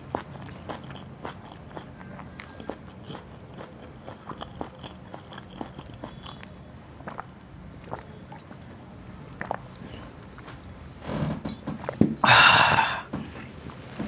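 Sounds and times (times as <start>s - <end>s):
person chewing crunchy food: 0.0s - 8.7s, 9.3s - 10.5s, 11.6s - 13.5s
low steady hum: 0.0s - 14.0s
mouth clicks: 0.1s - 8.6s, 9.4s - 9.7s.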